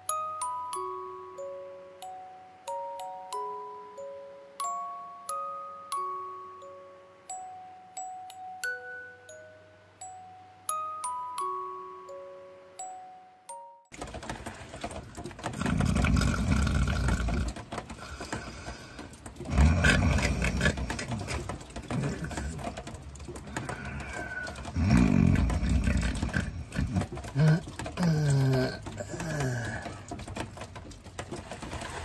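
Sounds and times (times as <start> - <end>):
pitched snorts: 19.5 - 22.5, 24.8 - 29.9.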